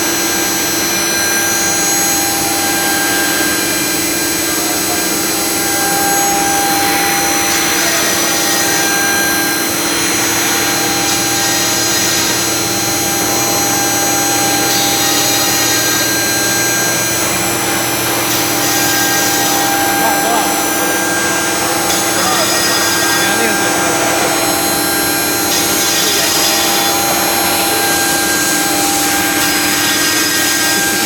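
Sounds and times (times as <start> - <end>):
router machine whine: 0.0 - 31.0.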